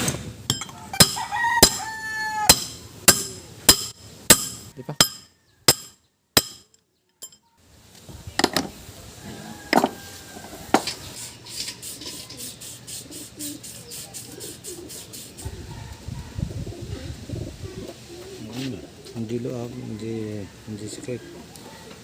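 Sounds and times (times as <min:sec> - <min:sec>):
metal tool taps on engine parts: 0:00.5 - 0:01.9, 0:02.5 - 0:07.4
pigeons cooing: 0:10.4 - 0:22.0.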